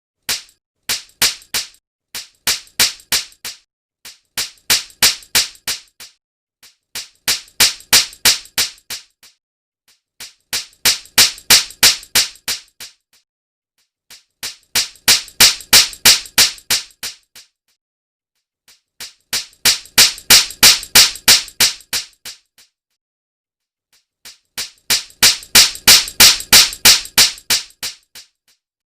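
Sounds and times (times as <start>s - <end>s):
sharp slap smacks: 0.3s - 6.2s, 7.0s - 9.4s, 10.2s - 13.0s, 14.4s - 17.5s, 19.0s - 22.4s, 24.3s - 28.3s.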